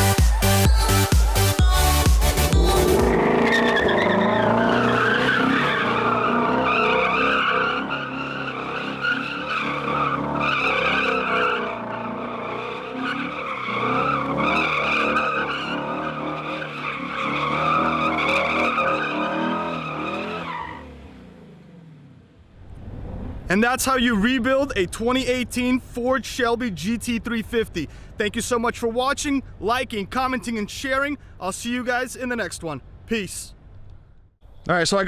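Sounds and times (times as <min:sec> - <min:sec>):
car engine running hard: 0:02.3 - 0:22.8
tyre squeal: 0:02.9 - 0:20.9.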